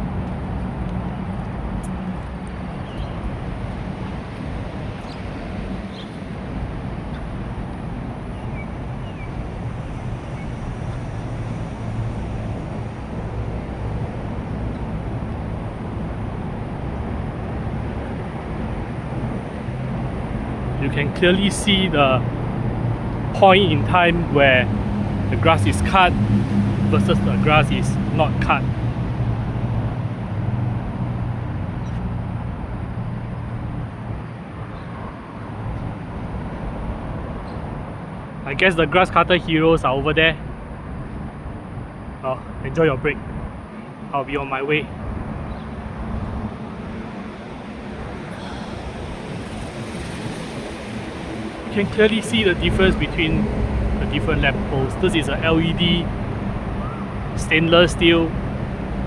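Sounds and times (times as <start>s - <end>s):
low engine hum: 0.0s - 59.0s
low outdoor rumble: 0.0s - 59.0s.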